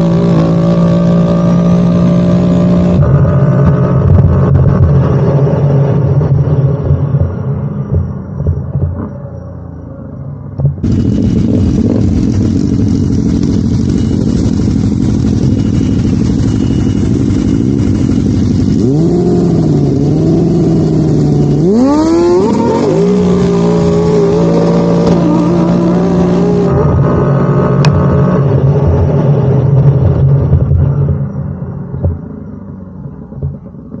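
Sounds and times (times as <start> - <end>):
atv engine accelerating: 0.0 - 8.1, 10.8 - 32.4.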